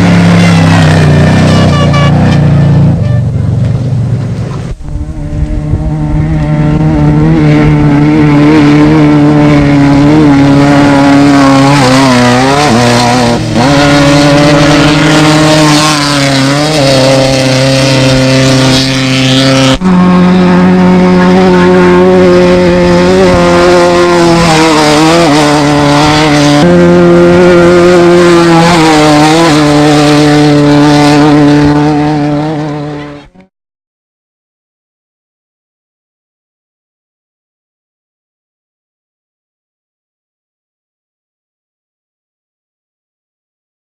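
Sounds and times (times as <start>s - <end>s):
race vehicle engines revving: 0.0s - 33.5s.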